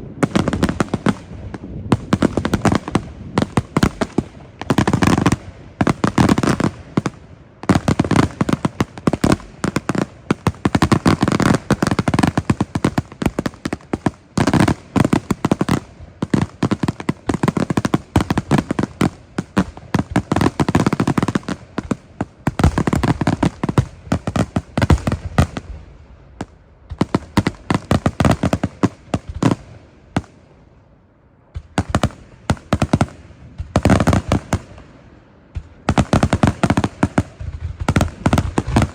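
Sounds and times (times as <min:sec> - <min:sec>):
fireworks bursts and bangs: 0:00.0 - 0:30.6, 0:31.5 - 0:38.9.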